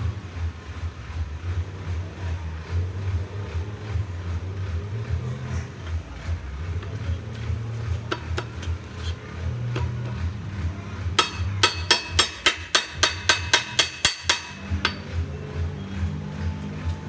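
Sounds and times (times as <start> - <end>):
low engine hum: 0.0 - 17.0
hammer striking metal: 11.2 - 15.3.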